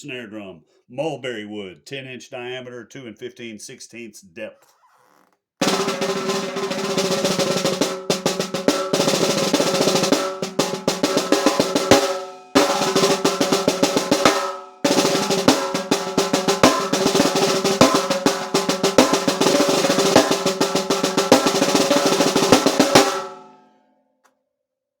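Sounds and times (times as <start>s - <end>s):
snare drum strokes and rolls: 5.6s - 23.4s.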